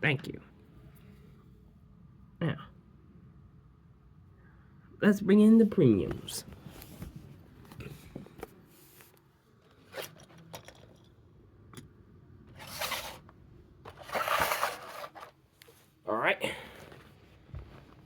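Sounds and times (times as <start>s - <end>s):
packaging scraping and rustling: 9.7s - 10.8s, 12.5s - 13.2s, 13.9s - 15.4s.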